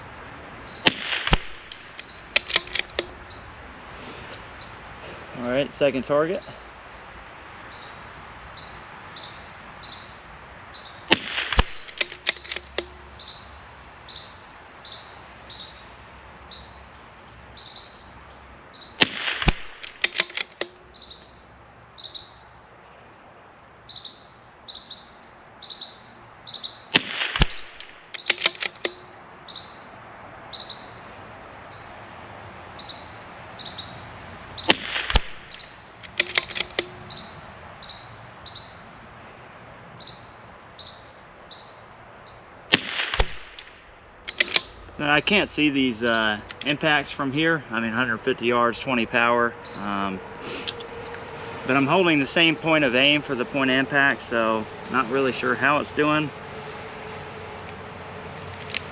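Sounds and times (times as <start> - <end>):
crickets chirping: 0.0 - 58.9
rifle shots: 0.8 - 3.1, 11.1 - 12.6, 19.0 - 20.6, 26.9 - 28.9, 34.6 - 35.6, 42.7 - 45.5
rifle bolt clicks: 0.9 - 3.1, 19.0 - 20.8, 27.0 - 29.0, 34.7 - 36.9, 44.3 - 44.7.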